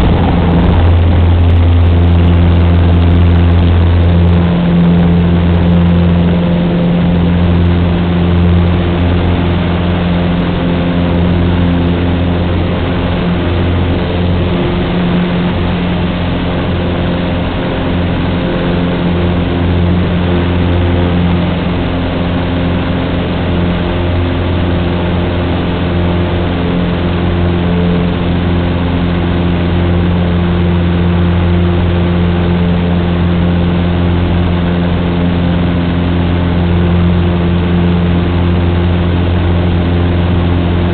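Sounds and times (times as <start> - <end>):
light aircraft engine droning: 0.0 - 40.9.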